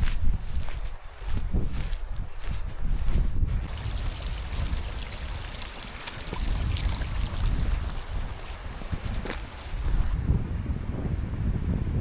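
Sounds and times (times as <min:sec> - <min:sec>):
wind buffeting microphone: 0:00.0 - 0:12.0
water splashing and lapping: 0:00.6 - 0:10.2.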